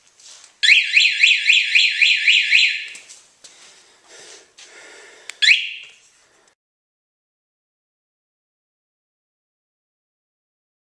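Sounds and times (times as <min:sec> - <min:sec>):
motorcycle alarm siren: 0:00.6 - 0:03.1, 0:05.4 - 0:06.0.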